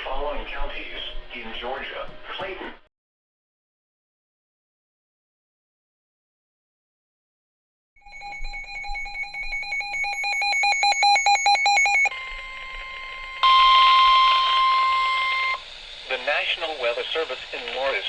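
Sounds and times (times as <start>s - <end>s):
rapidly pulsing electronic beep: 8.0s - 15.6s
steady warning tone: 8.0s - 18.0s.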